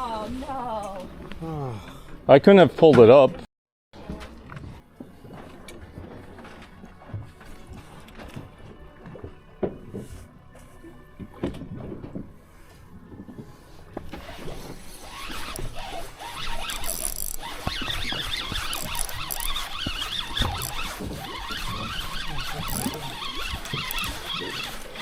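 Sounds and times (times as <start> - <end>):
low rumble of boat: 4.0 - 25.0
fishing reel whirring: 14.1 - 25.0.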